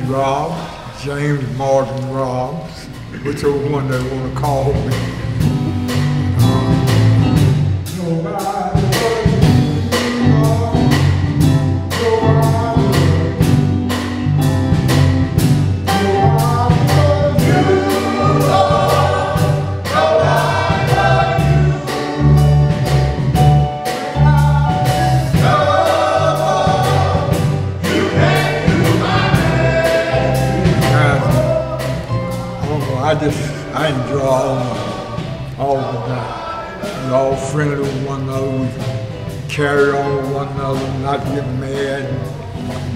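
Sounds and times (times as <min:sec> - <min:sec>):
bass line: 0:00.0 - 0:42.9
steady drum beat: 0:03.0 - 0:36.1, 0:36.8 - 0:42.9
male vocal group singing in harmony: 0:07.9 - 0:13.7, 0:15.9 - 0:22.6, 0:24.0 - 0:38.8.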